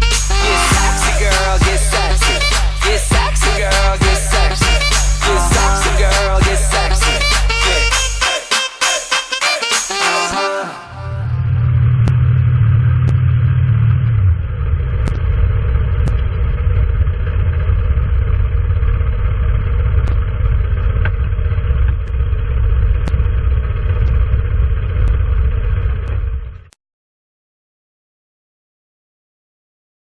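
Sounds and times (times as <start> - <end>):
motorcycle engine running: 0.0 - 7.9, 11.3 - 26.7.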